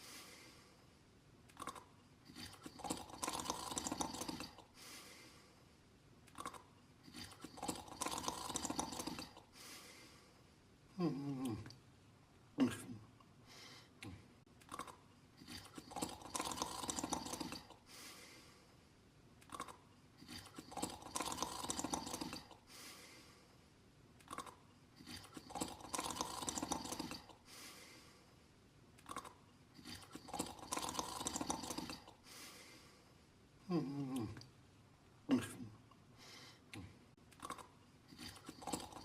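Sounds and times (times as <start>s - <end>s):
person snoring: 1.6s - 4.7s, 6.4s - 9.5s, 11.0s - 11.7s, 14.0s - 17.8s, 19.5s - 23.0s, 24.3s - 27.8s, 29.1s - 32.2s, 33.7s - 34.4s, 36.8s - 39.0s.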